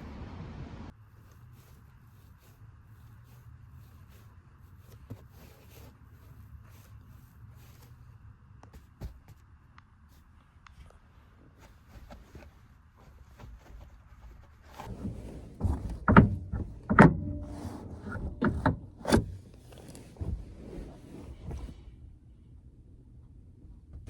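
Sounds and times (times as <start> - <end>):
vehicle door clunks and knocks: 14.8 - 21.7.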